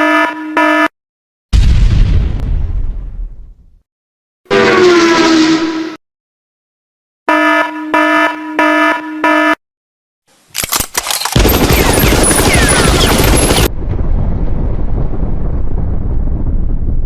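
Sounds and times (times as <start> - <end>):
pulsing electronic beeps: 11.4 - 13.7.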